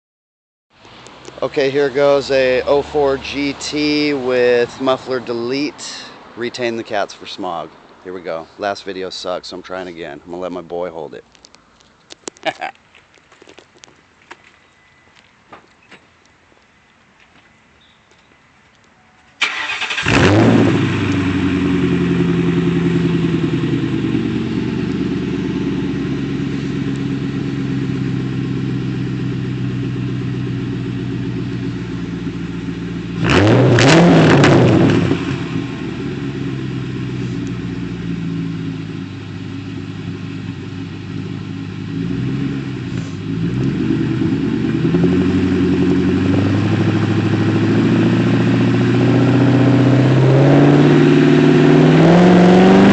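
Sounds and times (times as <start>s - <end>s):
car engine starting and idling: 0.8s - 10.9s, 19.3s - 52.9s
car engine revving: 1.0s - 6.1s, 19.4s - 52.9s.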